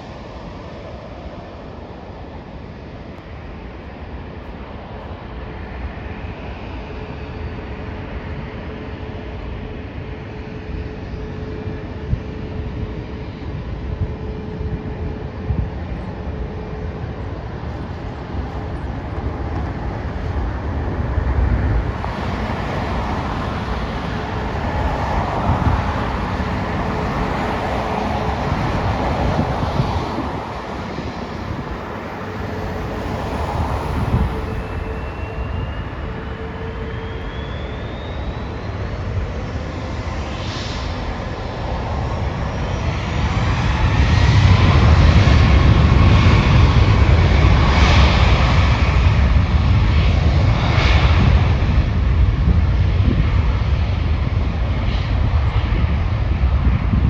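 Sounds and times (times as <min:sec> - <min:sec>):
jet engine rumble: 0:00.0 - 0:57.0
rising jet whine: 0:03.5 - 0:57.0.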